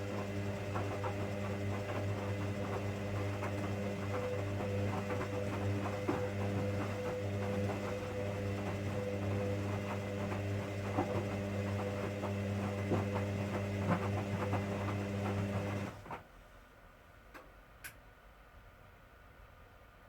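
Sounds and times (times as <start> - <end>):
washing machine motor hum: 0.0 - 16.2
washing machine knocking: 0.2 - 15.9.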